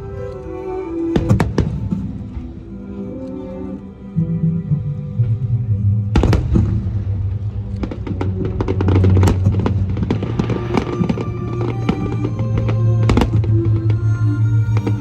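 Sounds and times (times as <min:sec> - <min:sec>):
fireworks crackling pops: 0:06.2 - 0:14.0.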